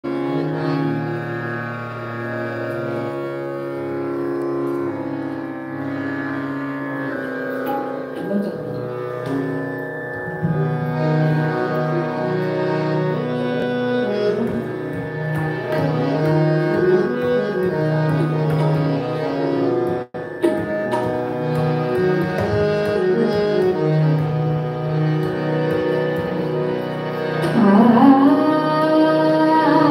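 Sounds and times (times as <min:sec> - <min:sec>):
tabla playing: 0:00.0 - 0:29.9
devotional melody over drone: 0:00.1 - 0:29.9.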